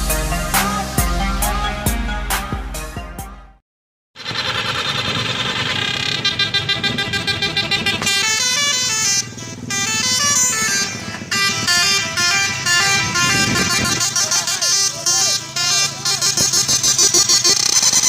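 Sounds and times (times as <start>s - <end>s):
multi-tone bus horn playing a tune: 5.8s - 18.0s.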